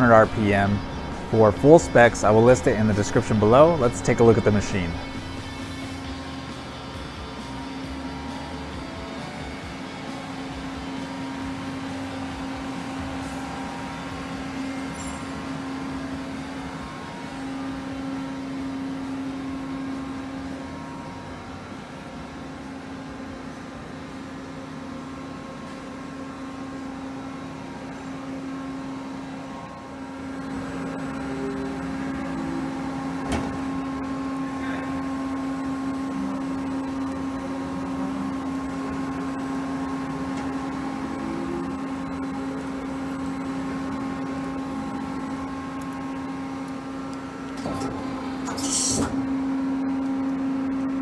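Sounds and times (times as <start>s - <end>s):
lathe mechanical hum: 0.0s - 51.0s.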